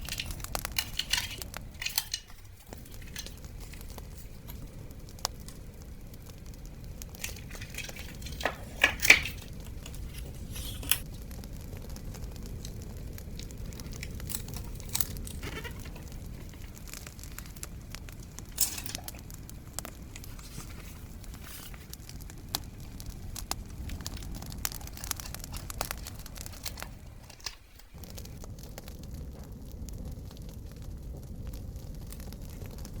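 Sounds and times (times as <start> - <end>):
paper crinkling and rustling: 0.0 - 11.1, 12.7 - 28.4
bonfire crackling and popping: 0.0 - 33.0.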